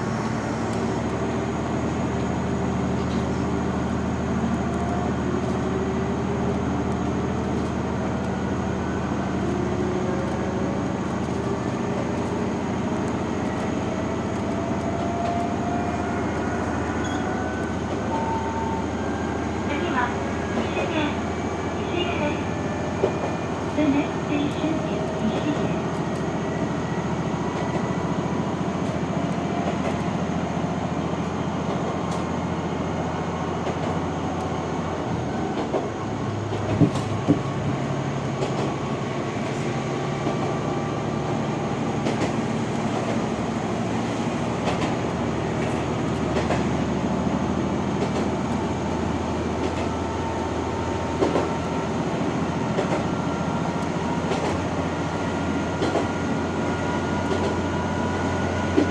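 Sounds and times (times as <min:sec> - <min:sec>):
diesel engine drone: 0:00.0 - 0:28.7
wheel and rail noise: 0:00.0 - 0:32.3.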